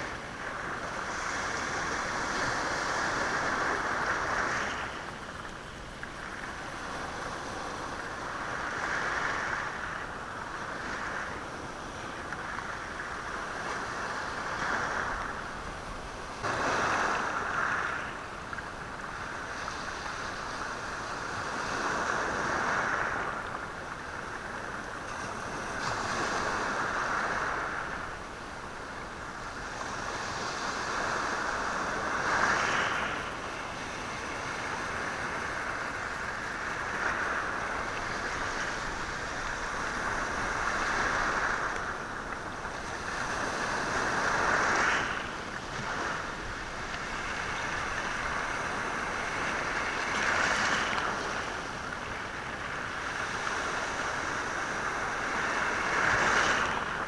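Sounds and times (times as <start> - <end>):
waves washing over stones: 0.0 - 18.5, 25.2 - 57.0.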